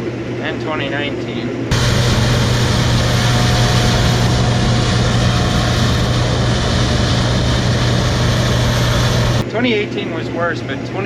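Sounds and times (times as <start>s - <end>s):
machine whirring hiss: 1.7s - 9.4s
low engine hum: 1.7s - 9.5s.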